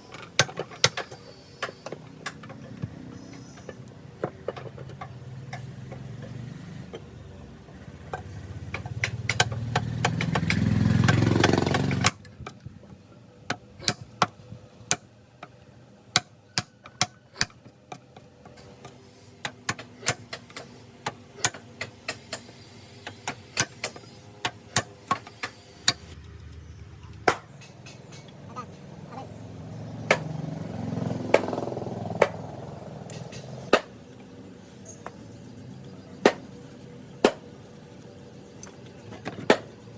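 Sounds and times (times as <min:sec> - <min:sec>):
vehicle engine: 0:00.0 - 0:12.2, 0:25.0 - 0:39.9.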